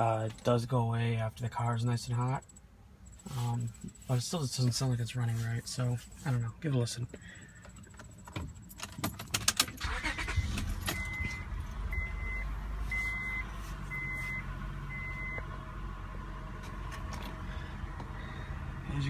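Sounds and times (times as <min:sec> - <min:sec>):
car engine starting and idling: 0:06.8 - 0:19.0
keys jangling in ignition: 0:07.5 - 0:11.4.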